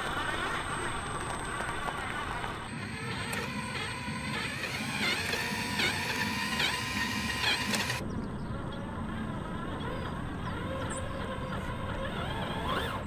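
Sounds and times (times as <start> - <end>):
toy truck motor whirring: 1.6 - 8.0, 9.8 - 13.0.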